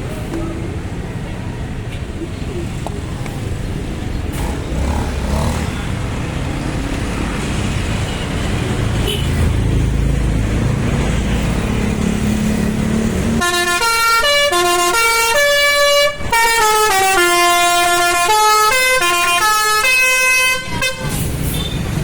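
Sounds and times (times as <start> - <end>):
engine and road noise: 0.0 - 22.0
musical bus horn melody: 13.3 - 21.7.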